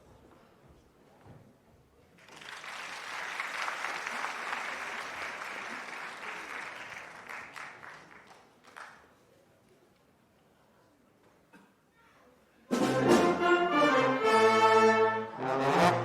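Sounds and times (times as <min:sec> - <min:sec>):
audience applauding: 0:02.2 - 0:09.1.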